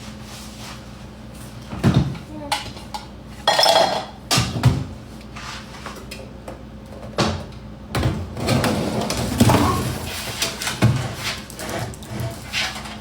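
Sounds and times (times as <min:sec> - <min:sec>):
pots and utensils clattering: 0:03.4 - 0:04.2, 0:08.4 - 0:13.0.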